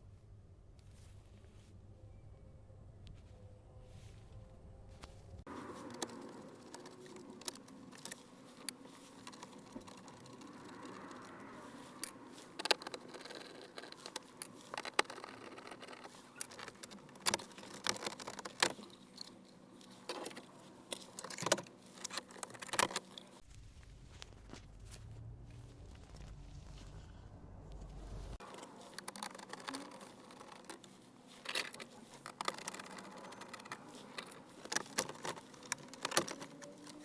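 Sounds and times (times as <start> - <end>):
plastic trim clicking and scraping: 5.8 - 23.4, 28.4 - 37.0.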